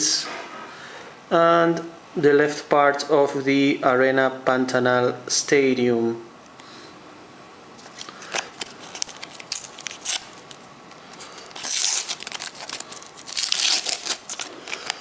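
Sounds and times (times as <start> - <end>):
sticker pack wrappers crinkling: 7.8 - 15.0.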